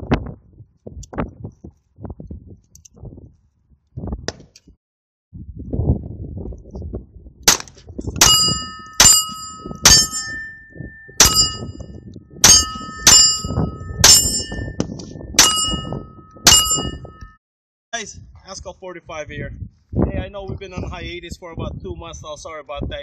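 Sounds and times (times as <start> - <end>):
pistol shots: 7.5 - 8.5
steel targets ringing: 8.2 - 17.4.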